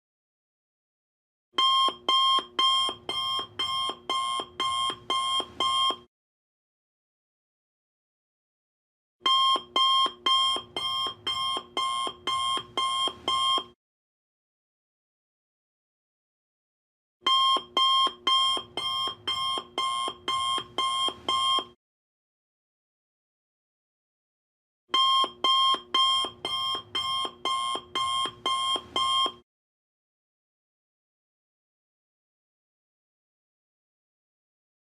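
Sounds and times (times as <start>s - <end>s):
alarm clock beeping: 1.6s - 6.1s, 9.3s - 13.8s, 17.3s - 21.8s, 25.0s - 29.4s.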